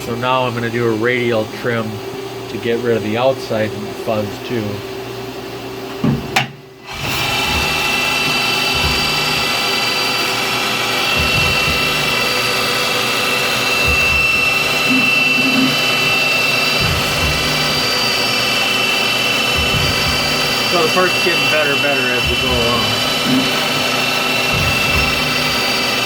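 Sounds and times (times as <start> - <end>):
lathe machine whine: 6.8 - 26.0.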